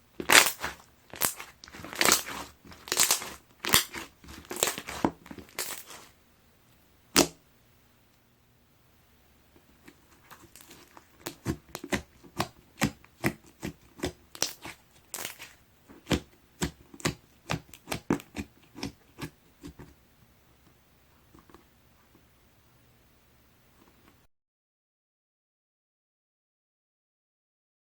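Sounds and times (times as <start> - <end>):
slime squeezed by hand popping: 0.2 - 6.1.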